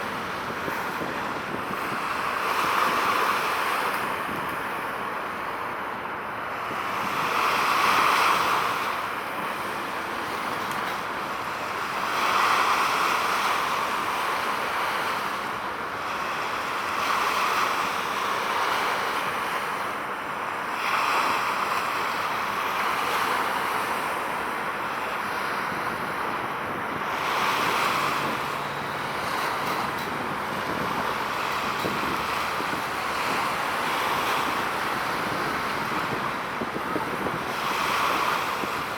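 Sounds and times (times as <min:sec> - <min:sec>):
wind buffeting microphone: 0:00.0 - 0:04.9, 0:25.2 - 0:38.9
sea waves washing in: 0:00.0 - 0:38.9.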